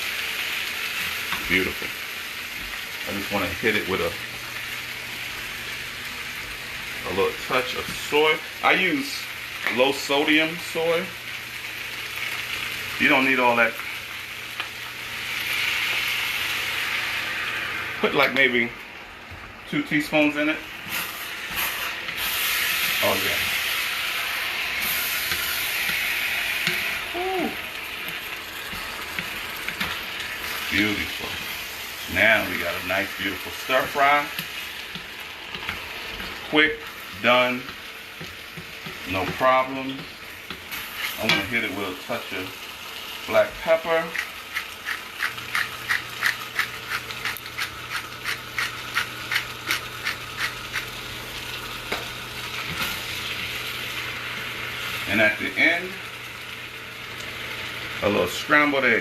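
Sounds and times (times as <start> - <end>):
rice sizzling in a pan: 0.0 - 59.0.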